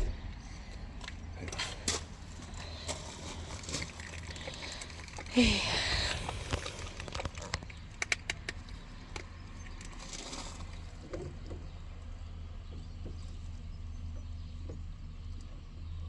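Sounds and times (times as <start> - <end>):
sharp clicks: 6.2 - 10.0.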